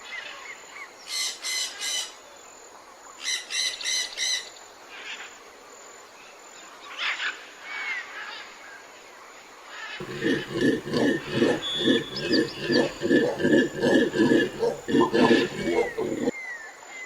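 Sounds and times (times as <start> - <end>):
rapid low grunts: 10.0 - 16.3
steady outdoor hiss: 10.0 - 16.3.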